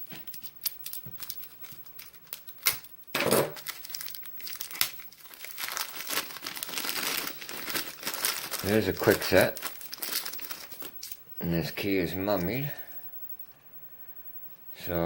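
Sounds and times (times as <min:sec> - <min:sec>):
packaging crinkling and rustling: 0:00.0 - 0:02.9, 0:03.5 - 0:11.2.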